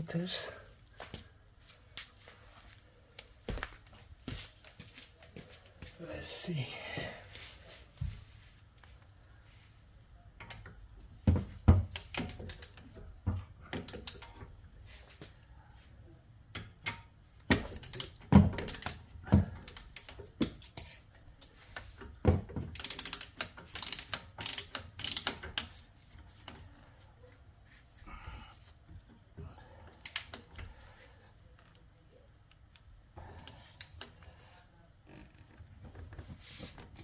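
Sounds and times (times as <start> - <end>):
ratchet wrench clicking: 22.8 - 25.7.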